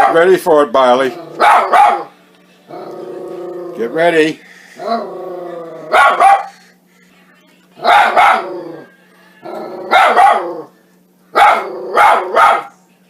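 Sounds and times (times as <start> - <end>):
dog barking and whining: 1.2 - 2.1, 4.8 - 6.6, 7.8 - 10.7, 11.3 - 12.8.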